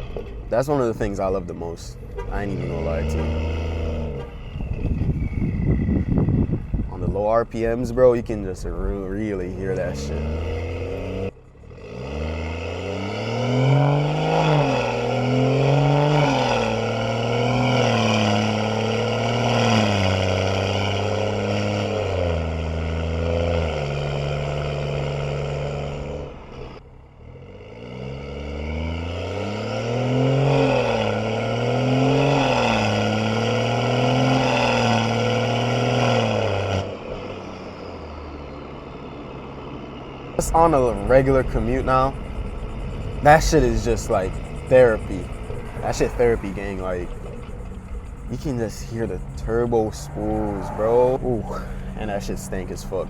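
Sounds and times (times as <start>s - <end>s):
car engine accelerating: 0.0s - 53.0s.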